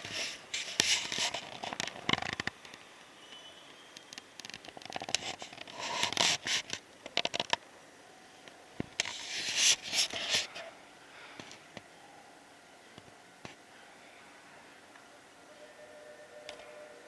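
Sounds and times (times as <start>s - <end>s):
scratching and scraping: 0.0s - 2.6s, 4.4s - 7.6s, 9.0s - 10.7s.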